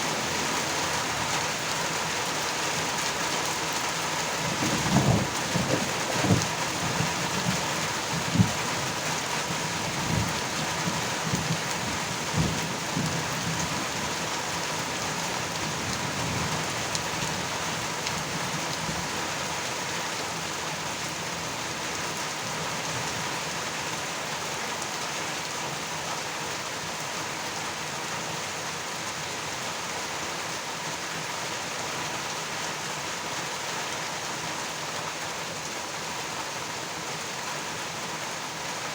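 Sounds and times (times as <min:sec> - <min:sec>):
heavy rain falling: 0:00.0 - 0:38.9
rolling rumble of thunder: 0:04.4 - 0:08.8, 0:09.9 - 0:14.0.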